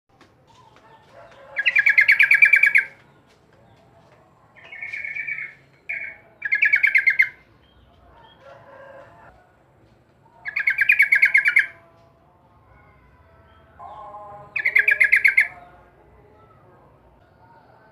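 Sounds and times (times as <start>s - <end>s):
bird chattering song: 0.5s - 8.4s, 10.4s - 11.9s, 13.5s - 16.6s.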